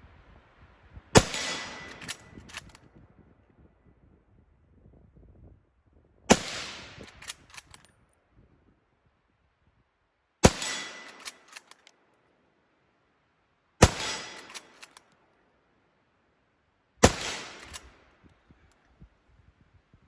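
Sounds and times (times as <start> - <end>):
rifle bolt clicks: 1.2 - 2.8, 7.0 - 7.9, 10.5 - 11.9, 13.8 - 15.2, 17.0 - 18.0
rifle shots: 1.2 - 2.8, 6.3 - 7.8, 10.4 - 11.8, 13.8 - 15.0, 17.0 - 18.0.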